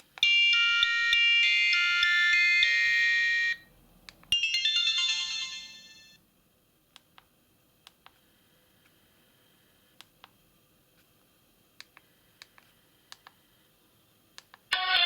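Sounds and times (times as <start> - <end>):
polyphonic ringtone from phone speaker: 0.2 - 3.6, 4.4 - 6.2.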